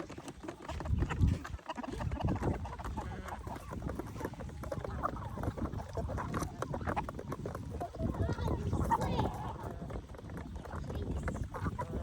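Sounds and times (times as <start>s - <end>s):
beaks tapping wooden trough: 0.0s - 12.0s
chickens clucking: 0.0s - 12.0s.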